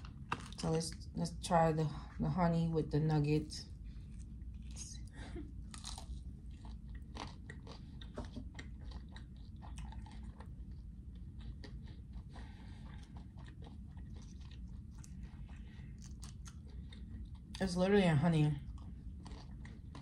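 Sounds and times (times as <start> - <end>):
person chewing crunchy food: 0.0 - 0.7, 3.8 - 17.7, 18.6 - 20.0
steady low hum: 0.0 - 20.0.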